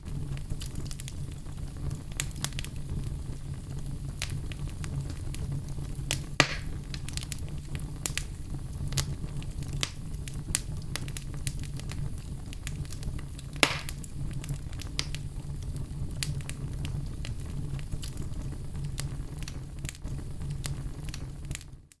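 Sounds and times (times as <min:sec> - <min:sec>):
sharp pops from fire: 0:00.0 - 0:22.0
wood fire crackling: 0:00.0 - 0:22.0.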